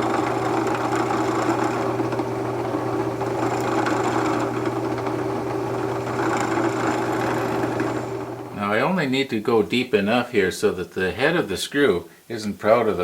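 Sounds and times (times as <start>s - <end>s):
electric drill boring into wood: 0.0s - 8.6s.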